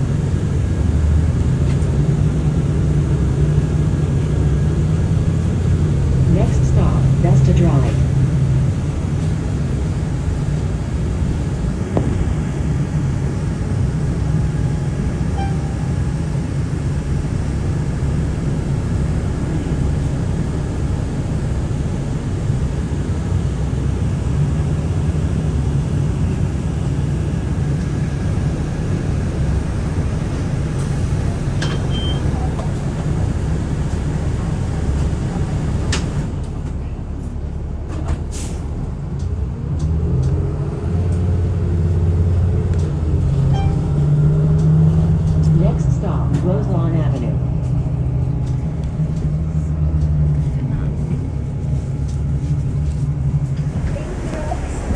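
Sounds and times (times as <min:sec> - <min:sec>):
bus engine and road rumble: 0:00.0 - 0:54.9
short high beep: 0:15.3 - 0:15.9, 0:31.7 - 0:32.3, 0:43.5 - 0:44.0.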